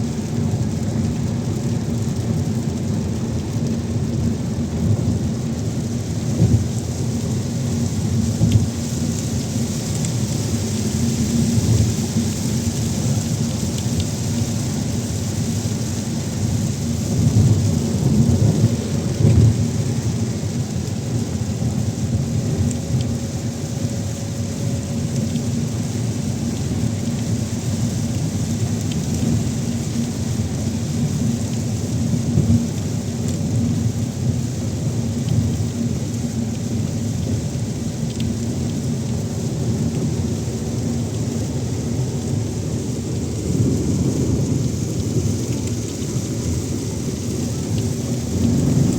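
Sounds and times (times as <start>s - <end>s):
steady rain falling: 0.0s - 48.9s
heavy low rumble: 38.8s - 48.9s.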